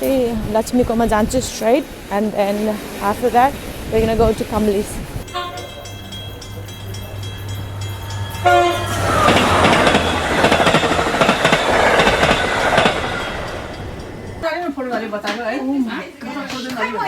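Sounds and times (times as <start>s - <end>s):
horn held tones: 5.3s - 10.4s.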